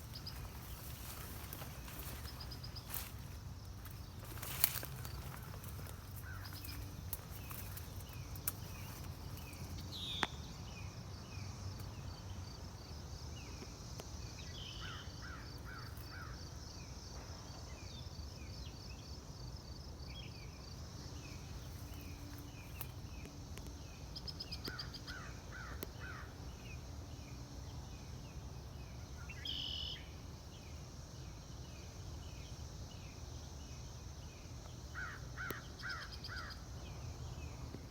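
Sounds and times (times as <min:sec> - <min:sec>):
soft bird chirps: 0:29.3 - 0:30.1.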